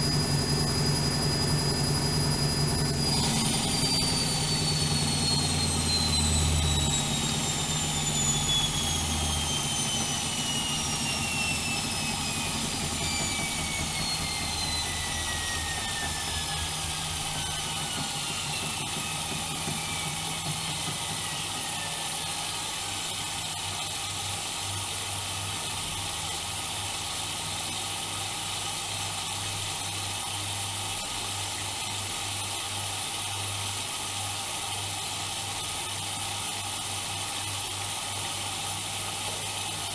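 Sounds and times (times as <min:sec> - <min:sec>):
low hum and rumble of drum: 0:00.0 - 0:21.8
washing machine drum winding down: 0:00.0 - 0:23.6.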